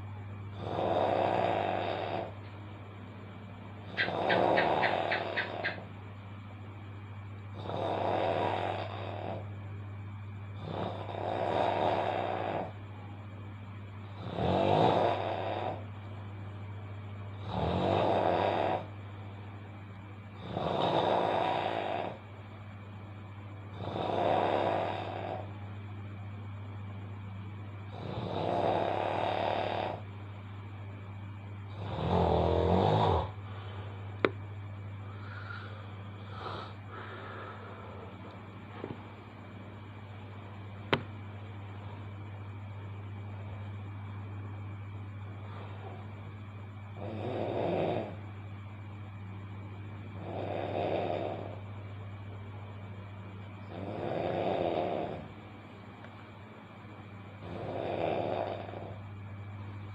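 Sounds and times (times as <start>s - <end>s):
steady low hum: 0.0s - 59.9s
person snoring loudly: 0.5s - 2.4s, 7.5s - 9.5s, 10.6s - 12.8s, 14.1s - 15.8s, 17.3s - 18.9s, 20.4s - 22.2s, 23.7s - 25.5s, 27.9s - 30.0s, 31.7s - 33.4s, 35.1s - 38.2s, 47.0s - 48.2s, 50.2s - 51.6s, 53.7s - 55.3s, 57.4s - 59.0s
quiet breathing: 32.6s - 39.4s, 45.3s - 46.3s.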